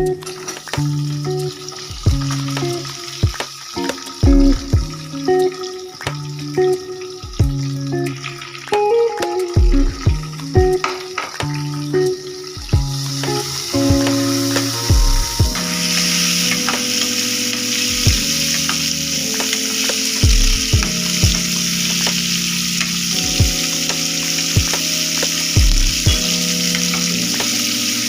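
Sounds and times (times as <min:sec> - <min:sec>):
onions sizzling in oil: 0:10.3 - 0:14.9, 0:15.5 - 0:20.2, 0:20.8 - 0:28.0.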